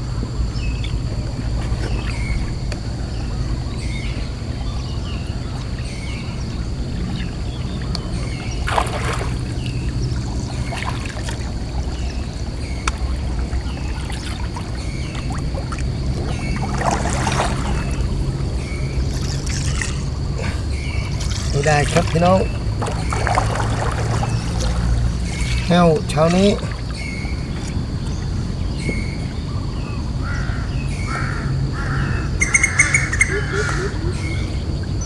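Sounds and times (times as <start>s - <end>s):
water splashing: 0.0s - 28.6s
boat motor running: 0.0s - 35.0s
bird chirping: 17.7s - 35.0s.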